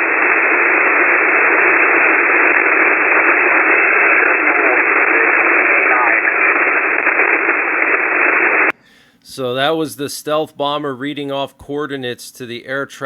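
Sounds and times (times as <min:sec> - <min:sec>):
radio static hiss: 0:00.0 - 0:09.5.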